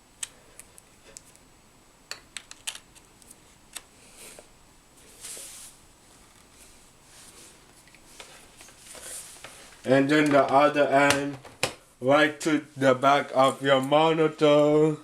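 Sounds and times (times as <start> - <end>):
soft rustles: 4.2 - 9.9.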